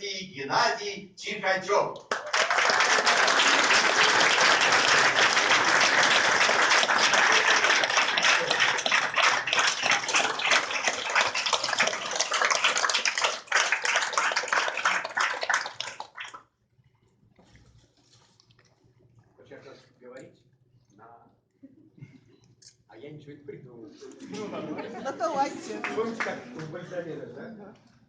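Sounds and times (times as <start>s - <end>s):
audience applauding: 2.1s - 16.4s, 25.3s - 26.9s.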